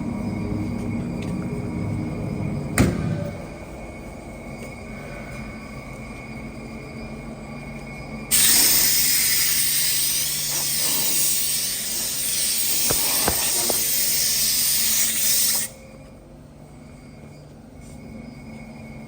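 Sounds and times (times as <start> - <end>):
compressed air hissing: 8.3 - 15.8.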